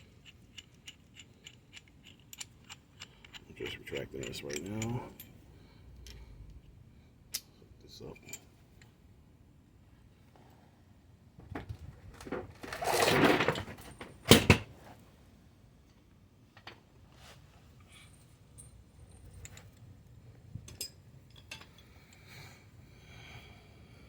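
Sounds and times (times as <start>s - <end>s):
metal tools rattling scrape: 0.0s - 5.4s, 12.6s - 14.0s.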